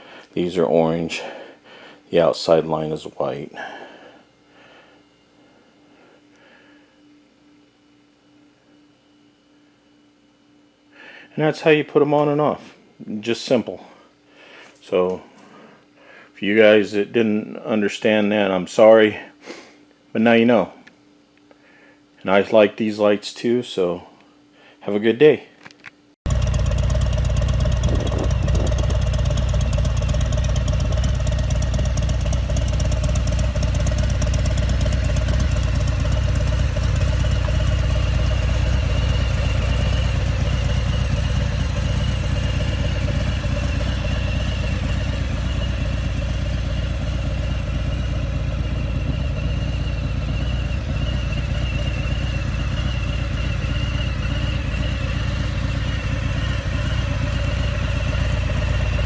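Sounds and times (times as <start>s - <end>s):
motorcycle engine running steadily: 26.3s - 59.0s.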